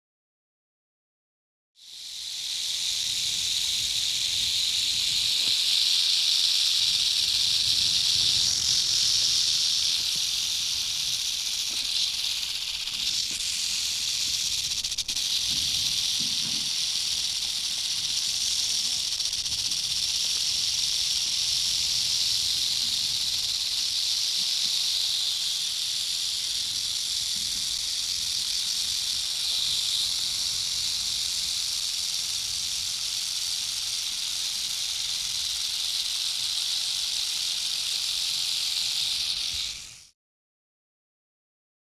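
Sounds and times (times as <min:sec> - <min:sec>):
rattlesnake rattling: 0:01.8 - 0:40.2.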